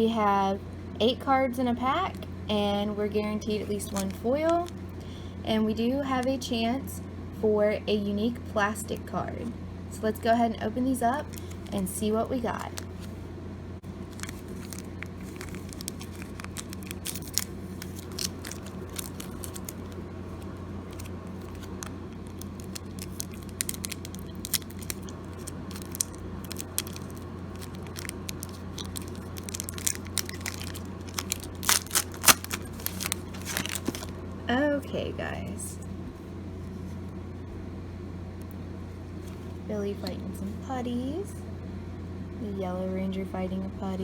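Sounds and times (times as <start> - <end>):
wrapper tearing and crinkling: 3.8 - 4.8, 11.3 - 11.8, 14.0 - 34.2.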